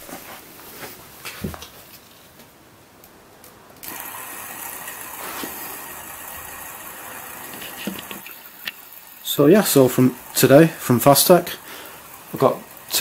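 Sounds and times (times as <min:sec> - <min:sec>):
spinner whirring buzz: 0:03.8 - 0:13.0.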